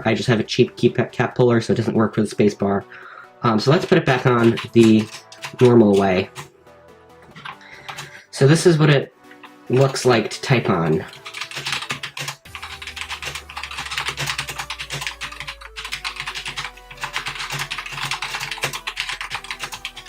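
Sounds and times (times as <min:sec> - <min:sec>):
mechanical keyboard typing: 0:03.7 - 0:06.5, 0:07.2 - 0:08.2, 0:11.0 - 0:20.0.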